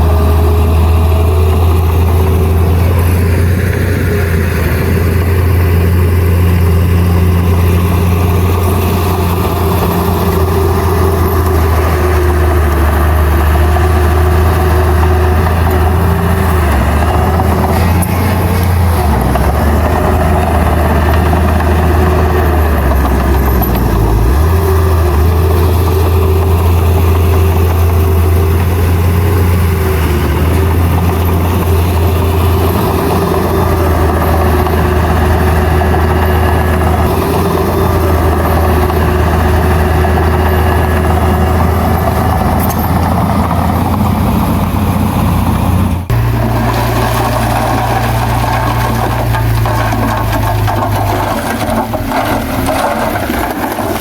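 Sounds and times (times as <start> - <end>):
heavy diesel engine droning: 0.0 - 54.0.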